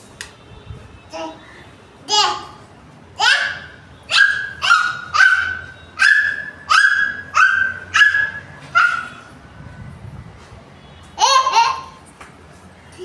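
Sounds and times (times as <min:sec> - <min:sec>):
child imitating puppy yips: 0:03.2 - 0:09.2.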